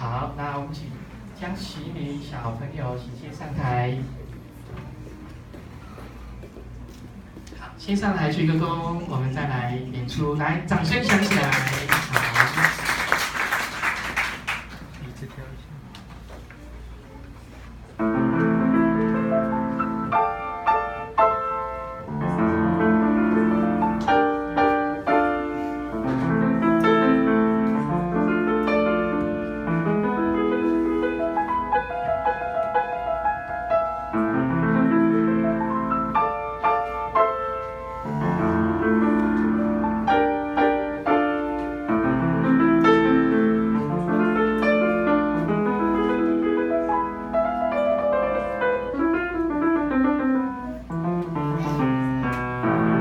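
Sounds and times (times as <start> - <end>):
solo piano piece: 17.9 - 53.0.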